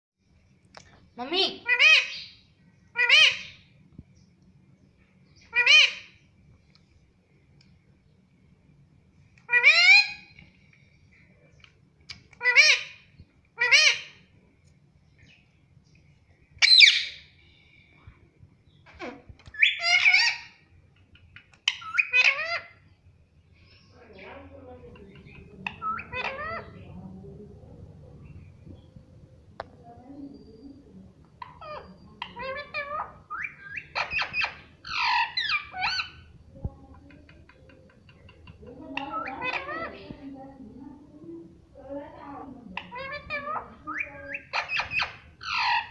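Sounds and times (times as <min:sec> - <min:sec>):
parrot calling: 0:01.4 - 0:03.8, 0:05.4 - 0:06.2, 0:09.4 - 0:10.4, 0:12.1 - 0:14.3, 0:16.6 - 0:17.4, 0:19.2 - 0:22.9, 0:24.8 - 0:26.9, 0:31.3 - 0:36.4, 0:37.5 - 0:40.2, 0:42.4 - 0:45.9.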